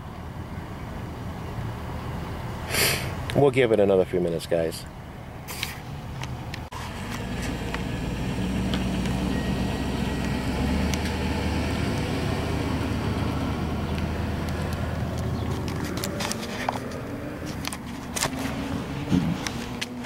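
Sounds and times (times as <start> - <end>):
vehicle engine running: 5.9 - 20.0.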